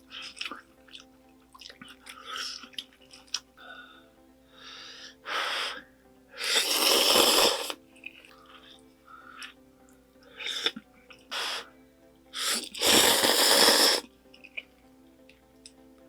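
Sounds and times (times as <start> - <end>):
wet chewing clicks: 0.2 - 3.5
slurping noodles: 6.4 - 8.2, 10.4 - 11.7, 12.4 - 14.6.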